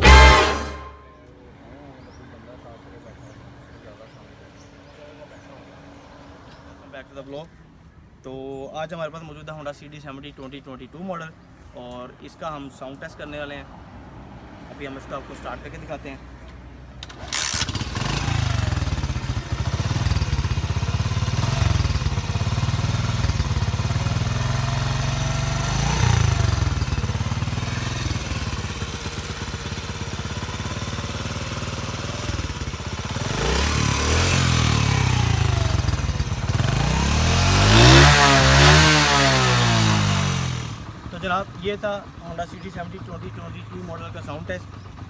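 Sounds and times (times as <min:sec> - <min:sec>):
motorcycle engine revving: 0:00.0 - 0:01.3, 0:17.0 - 0:43.9
motorcycle engine starting and idling: 0:16.5 - 0:45.0.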